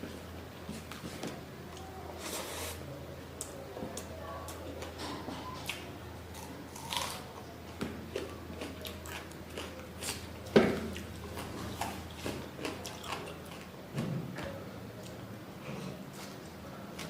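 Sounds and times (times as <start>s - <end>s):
chewing and biting: 8.1s - 13.7s.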